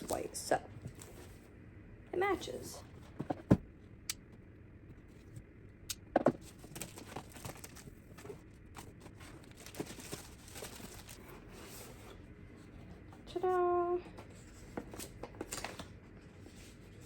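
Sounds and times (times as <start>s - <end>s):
packaging rustling and crinkling: 6.4s - 12.2s.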